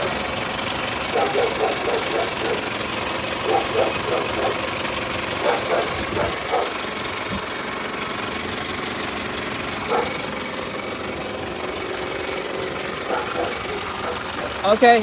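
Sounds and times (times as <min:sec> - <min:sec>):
car engine idling: 0:00.0 - 0:15.0
spray can hissing: 0:06.9 - 0:07.4, 0:08.8 - 0:09.4.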